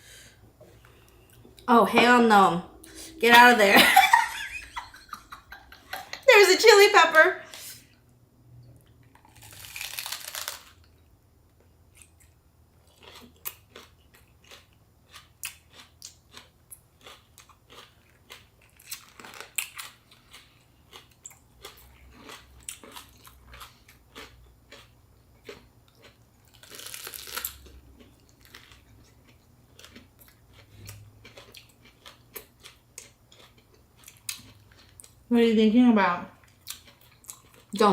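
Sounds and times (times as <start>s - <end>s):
chewing and crunching: 8.7s - 35.3s, 36.4s - 37.9s.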